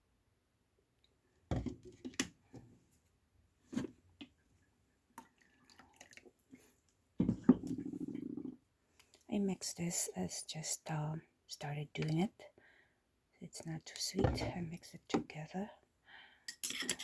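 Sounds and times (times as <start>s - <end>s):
liquid dripping and splashing: 5.2s - 6.7s.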